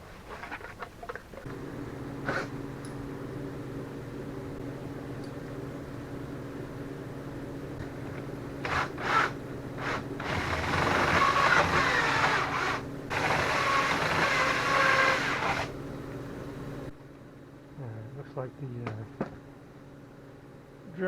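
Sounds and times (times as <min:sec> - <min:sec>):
cordless drill running: 0:08.6 - 0:15.7.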